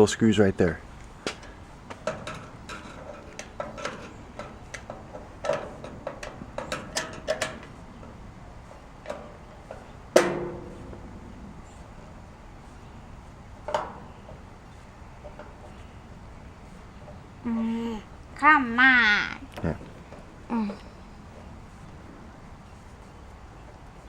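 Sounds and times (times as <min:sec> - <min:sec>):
metal clang ringing: 0:01.2 - 0:17.2.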